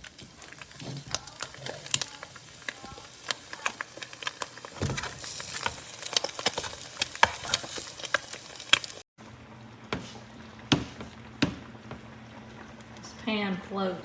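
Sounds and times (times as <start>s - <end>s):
hot oil popping: 0.0s - 9.0s
food sizzling in a pan: 0.0s - 9.1s.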